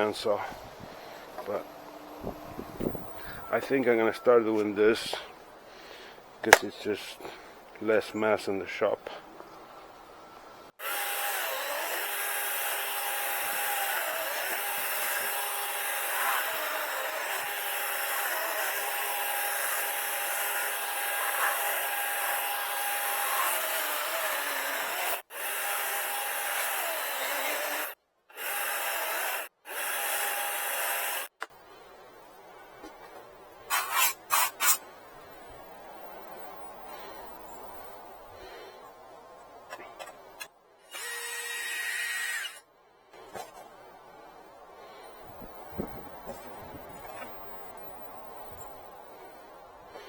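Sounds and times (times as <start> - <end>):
electric chainsaw cutting wood: 10.8 - 31.4, 40.9 - 42.6.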